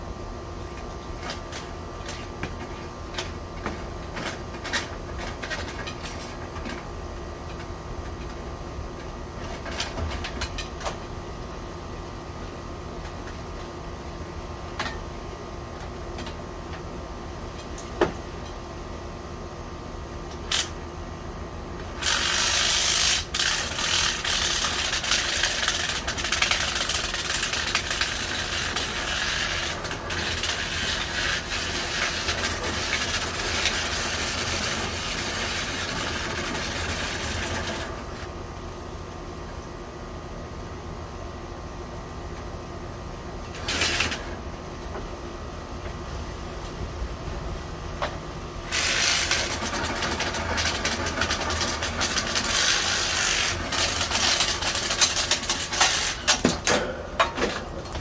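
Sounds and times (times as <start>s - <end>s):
steady hum: 18.7s - 58.0s
brush scraping inside vent duct: 21.9s - 38.4s, 46.0s - 58.0s.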